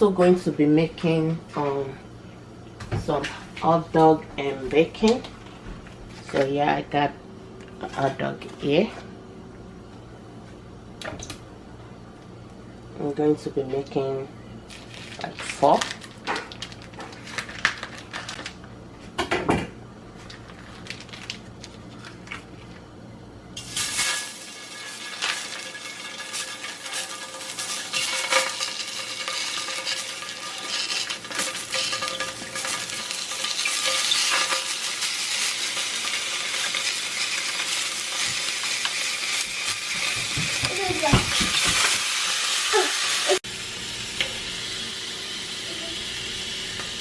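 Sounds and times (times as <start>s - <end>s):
hot dogs sizzling in a frying pan: 23.6s - 47.0s
utensil clinking on a pan: 23.7s - 35.1s.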